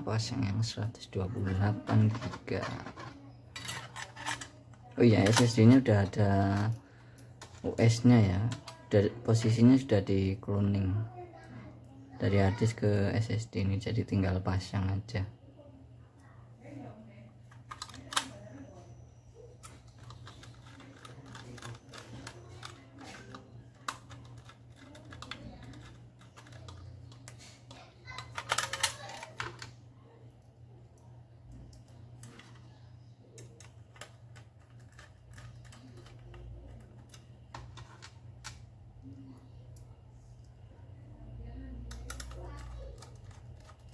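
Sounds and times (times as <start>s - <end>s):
low steady hum: 13.0s - 43.9s
small laptop parts clicking: 17.5s - 18.7s, 19.6s - 29.8s, 31.5s - 40.6s, 41.7s - 43.9s.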